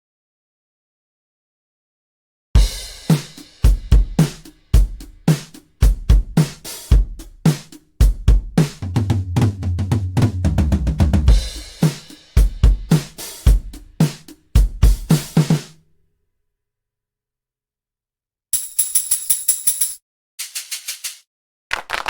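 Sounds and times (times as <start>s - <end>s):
drum kit groove: 2.6s - 15.8s, 18.6s - 21.2s.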